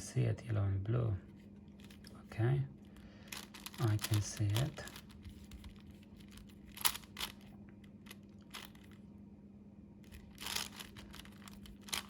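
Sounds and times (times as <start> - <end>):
puzzle cube clicking and rattling: 2.9 - 9.0, 10.1 - 12.0.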